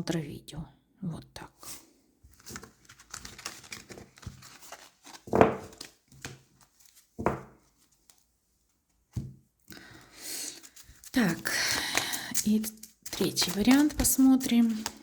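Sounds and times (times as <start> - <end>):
cards shuffling: 2.3 - 8.2, 9.7 - 15.0
card thumps: 5.2 - 6.4, 7.2 - 7.6.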